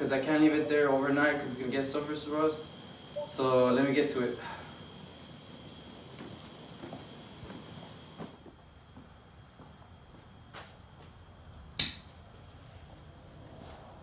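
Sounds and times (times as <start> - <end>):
sharp loud air burst: 0.0 - 5.9
air blow gun hissing: 0.0 - 8.4.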